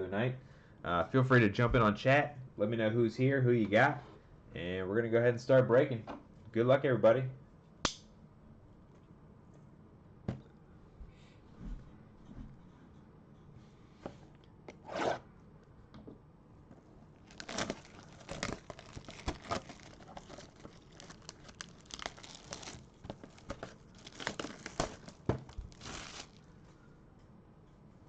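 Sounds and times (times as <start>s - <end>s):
plastic wrapping tearing and crinkling: 17.2s - 26.5s.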